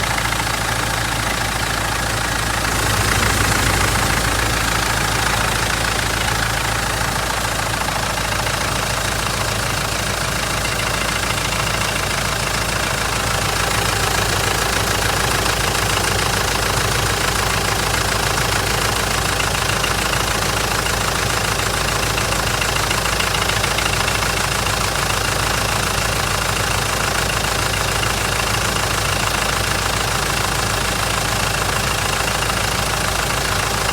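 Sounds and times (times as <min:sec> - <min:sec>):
diesel engine idling with knocking: 0:00.0 - 0:33.9.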